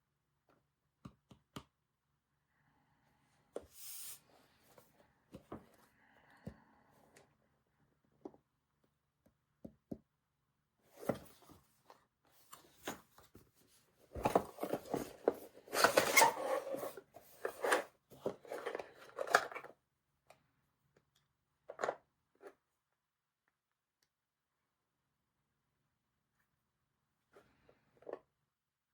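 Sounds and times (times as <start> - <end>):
rustling and scraping: 10.9 - 19.7.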